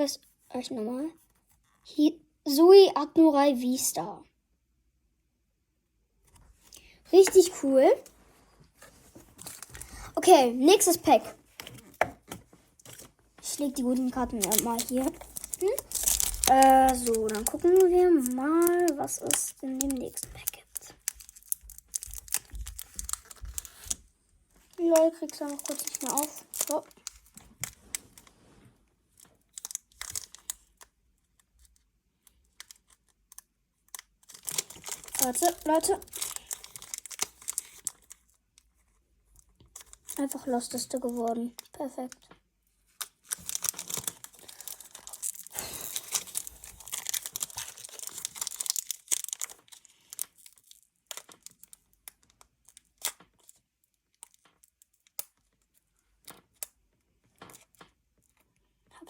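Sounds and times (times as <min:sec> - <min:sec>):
foil wrapper crinkling: 0:08.8 - 0:38.8, 0:39.4 - 0:41.7, 0:42.9 - 0:56.7.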